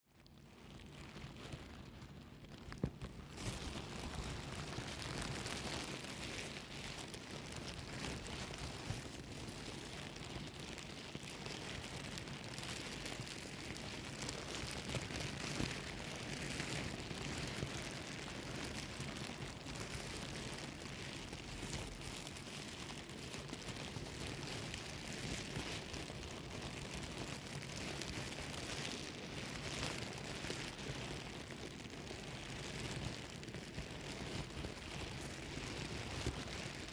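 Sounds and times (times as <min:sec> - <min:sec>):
plastic bag crinkling: 0:00.1 - 0:36.9.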